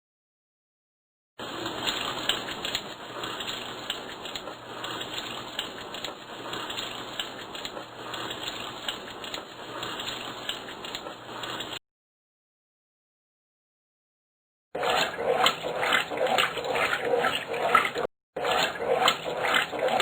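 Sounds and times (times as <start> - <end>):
crackling hiss with clicks: 1.4 - 11.8.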